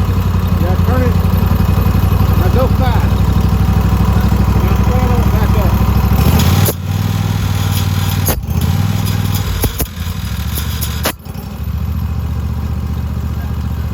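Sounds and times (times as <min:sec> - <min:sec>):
riding lawn mower engine running: 0:00.0 - 0:13.9
sharp clicks: 0:06.2 - 0:11.3.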